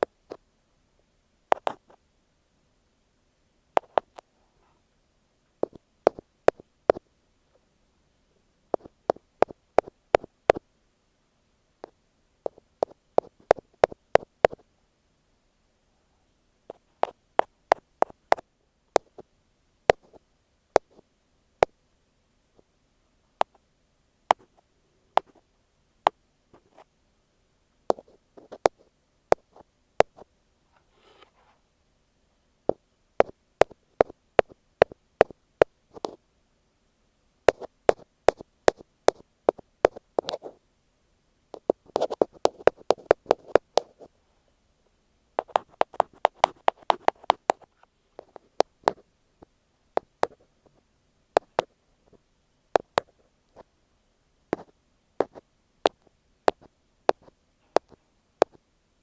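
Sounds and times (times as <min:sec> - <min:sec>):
ear pick tapping on microphone: 0:01.5 - 0:01.8, 0:03.8 - 0:04.2, 0:05.6 - 0:07.0, 0:32.7 - 0:36.2, 0:45.4 - 0:49.0, 0:50.0 - 0:50.4, 0:52.8 - 0:53.7, 0:54.5 - 0:58.6
soft rubbing: 0:27.9 - 0:31.7.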